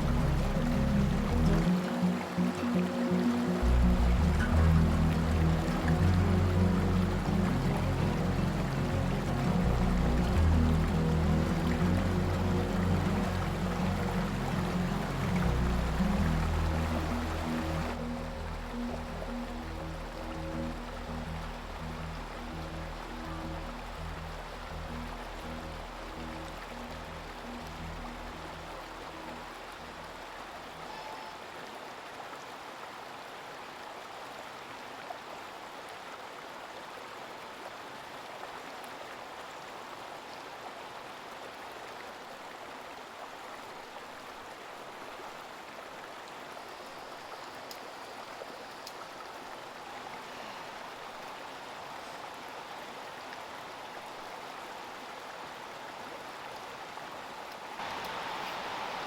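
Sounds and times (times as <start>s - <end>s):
creek flowing: 0.0s - 59.0s
water splashing ticks: 46.5s - 49.8s, 57.5s - 58.7s.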